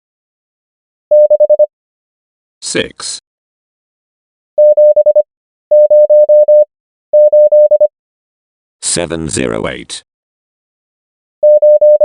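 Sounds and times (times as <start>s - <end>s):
morse code beeps: 1.1s - 1.7s, 4.6s - 7.9s, 11.4s - 12.0s.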